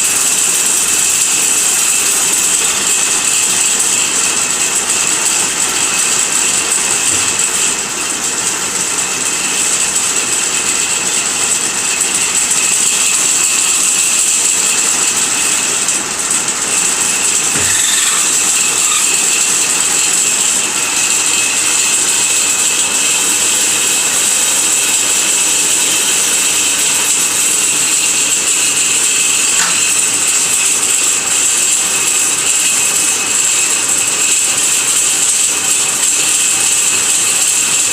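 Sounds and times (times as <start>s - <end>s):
automatic lathe machining: 0.0s - 37.9s
high-pitched whine: 16.8s - 22.1s.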